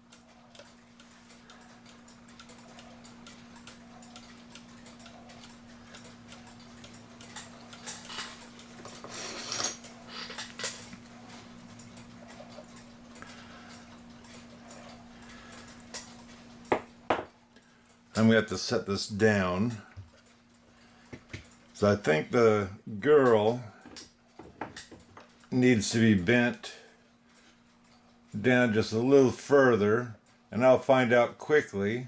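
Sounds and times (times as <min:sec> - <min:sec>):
clock ticking faintly: 0:00.0 - 0:08.8, 0:09.8 - 0:31.7
pendulum wire clicks and knocks: 0:15.6 - 0:17.4, 0:21.1 - 0:21.7, 0:23.2 - 0:25.5.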